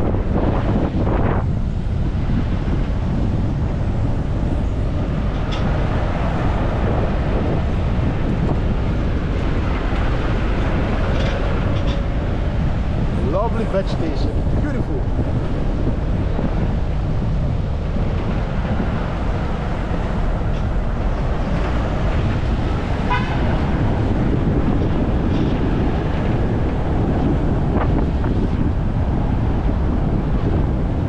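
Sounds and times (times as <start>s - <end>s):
car road noise: 0.0s - 31.0s
wind buffeting microphone: 0.0s - 31.0s
vehicle horn toot: 23.0s - 23.5s.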